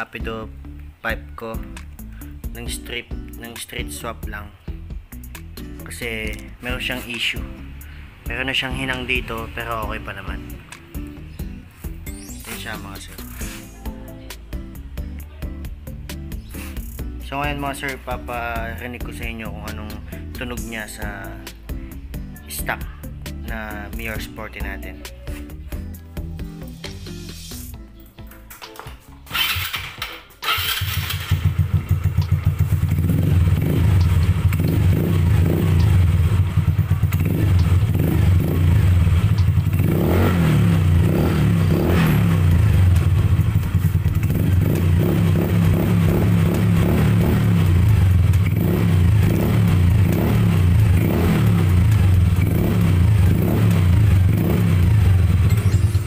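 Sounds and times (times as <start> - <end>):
scooter throttle revving: 29.3 - 56.0
scooter engine idling: 30.5 - 56.0.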